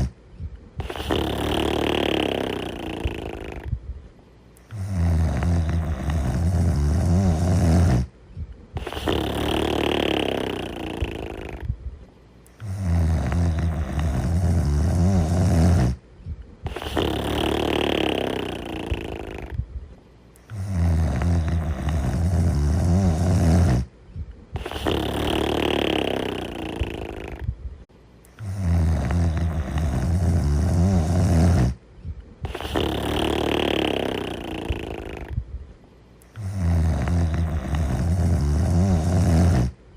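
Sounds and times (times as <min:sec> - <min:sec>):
person snoring: 0:00.8 - 0:03.7, 0:04.6 - 0:08.1, 0:08.8 - 0:11.7, 0:12.5 - 0:16.0, 0:16.7 - 0:19.6, 0:20.4 - 0:23.9, 0:24.6 - 0:27.5, 0:28.4 - 0:31.8, 0:32.4 - 0:35.4, 0:36.2 - 0:39.8.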